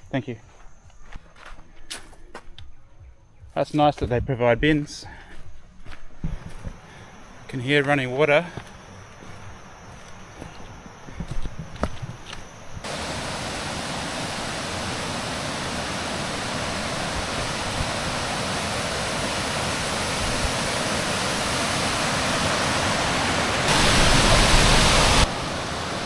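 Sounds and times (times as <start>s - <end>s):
waterfall pouring into a pool: 12.9s - 26.0s.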